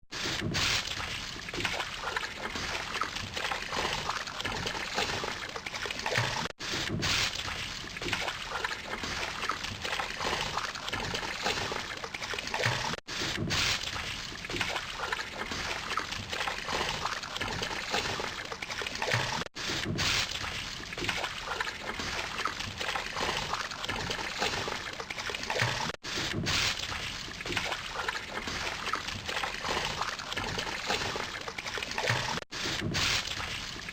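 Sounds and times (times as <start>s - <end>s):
swimmer splashing water: 0.1s - 33.9s.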